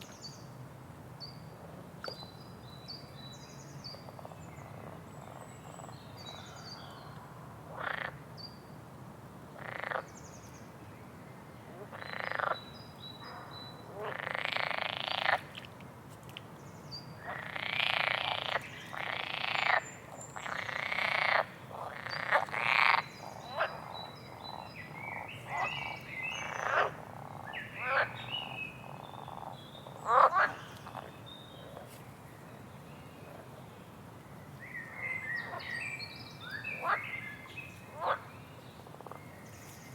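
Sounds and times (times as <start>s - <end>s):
frogs croaking: 7.7s - 8.2s, 9.6s - 10.2s, 11.7s - 15.6s, 17.2s - 31.9s, 36.4s - 39.4s.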